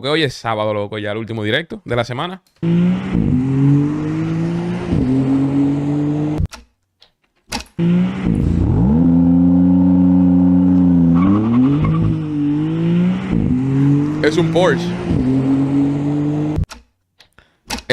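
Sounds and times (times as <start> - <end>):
sports car engine accelerating: 2.6 - 6.5, 7.8 - 16.7.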